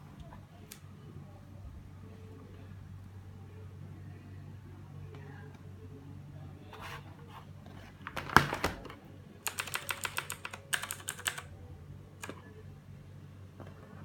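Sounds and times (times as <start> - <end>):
mechanical keyboard typing: 9.4 - 11.5.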